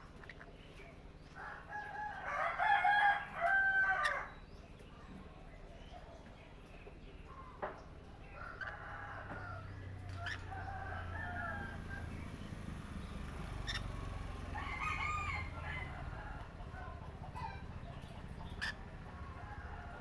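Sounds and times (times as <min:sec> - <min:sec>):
parrots squawking and chirping: 0:00.0 - 0:00.7, 0:01.6 - 0:04.5, 0:08.4 - 0:12.1, 0:13.1 - 0:19.8.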